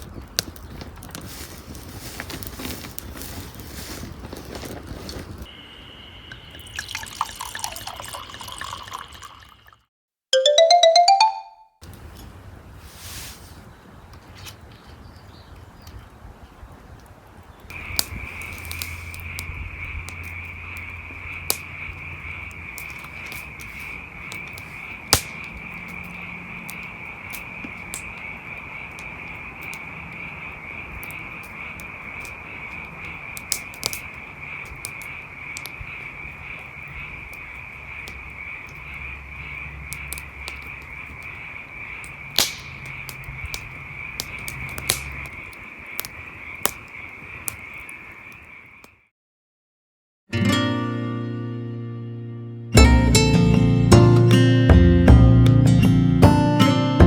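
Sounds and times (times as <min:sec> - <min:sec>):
campfire crackling and popping: 0:00.0 - 0:05.5, 0:06.3 - 0:09.5, 0:16.9 - 0:49.0.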